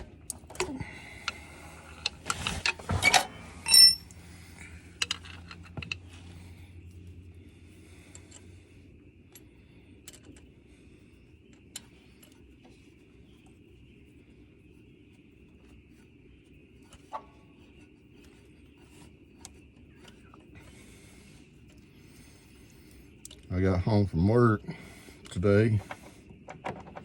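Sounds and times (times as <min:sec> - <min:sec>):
faint steady hum: 0:00.0 - 0:27.0
metal hand tools clinking: 0:03.0 - 0:04.1.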